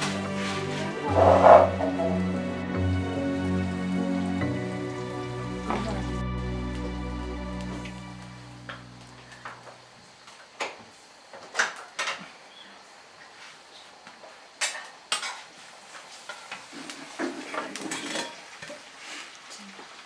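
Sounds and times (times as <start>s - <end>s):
pots and dishes clattering: 0.0s - 4.3s, 16.3s - 18.8s.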